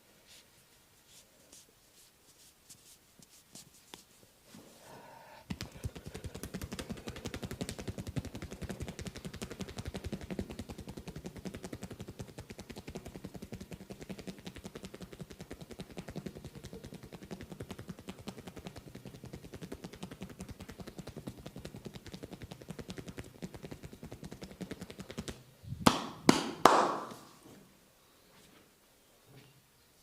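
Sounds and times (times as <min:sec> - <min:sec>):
hands tapping on head: 0:05.5 - 0:27.3.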